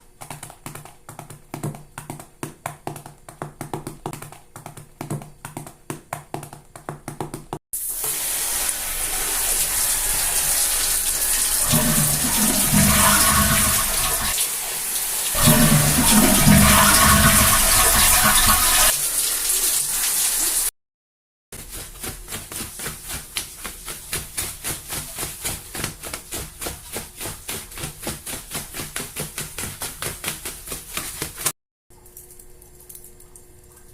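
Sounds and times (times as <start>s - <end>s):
toilet flushing water rushing: 7.8s - 20.7s.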